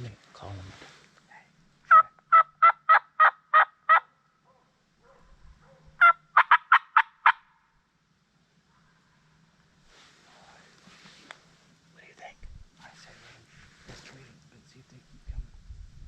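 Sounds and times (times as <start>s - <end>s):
turkey call yelps: 1.9s - 4.1s, 5.7s - 7.5s.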